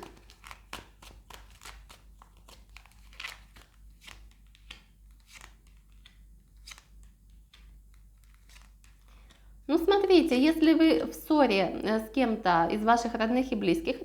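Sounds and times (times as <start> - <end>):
cards shuffling: 0.0 - 9.4.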